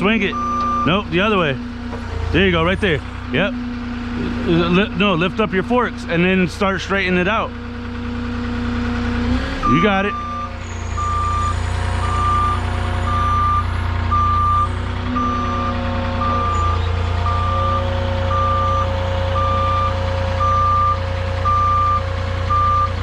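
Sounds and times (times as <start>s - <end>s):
forklift engine running: 0.0s - 23.0s
reversing alarm beeping: 0.2s - 1.7s, 9.6s - 23.0s.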